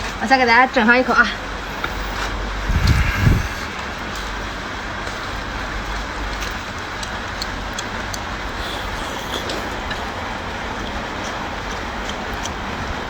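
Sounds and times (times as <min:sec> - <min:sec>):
background rumble and hiss: 0:00.0 - 0:13.0
chewing clicks: 0:05.1 - 0:13.0.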